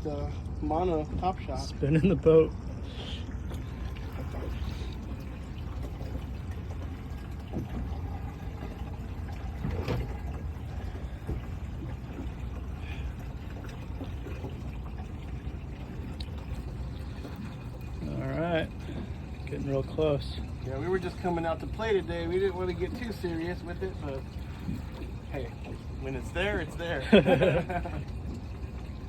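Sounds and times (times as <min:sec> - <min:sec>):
steady low rumble: 0:00.0 - 0:19.7
water lapping against boat hull: 0:00.0 - 0:29.0.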